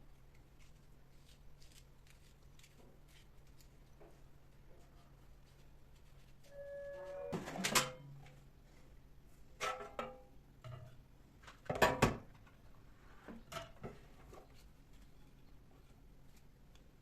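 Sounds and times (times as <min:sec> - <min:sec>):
short steady tone: 0:06.5 - 0:07.4.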